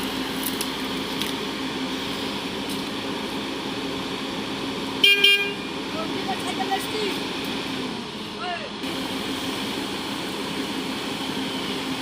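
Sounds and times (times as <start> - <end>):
heavy machine engine running: 0.0 - 12.0
short horn beeps: 5.0 - 5.7.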